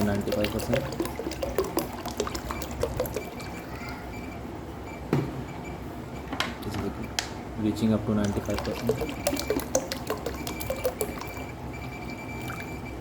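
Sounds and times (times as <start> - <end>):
water pouring into container: 0.0 - 3.8, 8.2 - 11.6, 12.4 - 12.8.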